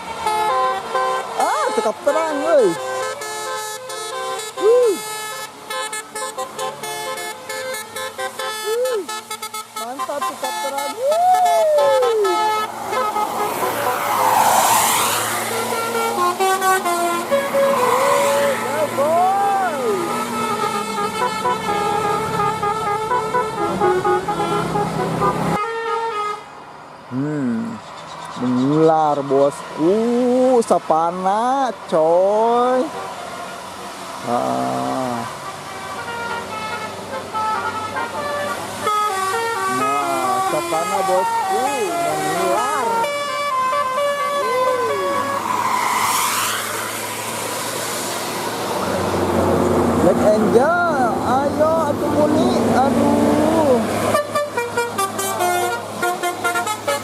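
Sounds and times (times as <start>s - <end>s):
bus horn playing a tune: 0.0s - 14.4s, 15.0s - 26.7s, 34.8s - 45.8s, 51.8s - 57.0s
bus engine: 0.0s - 57.0s.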